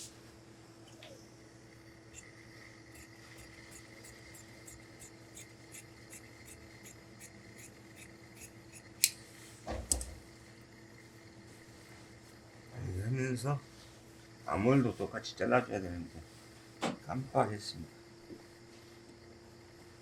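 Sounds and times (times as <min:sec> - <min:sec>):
shears cutting fabric: 0:02.2 - 0:09.2.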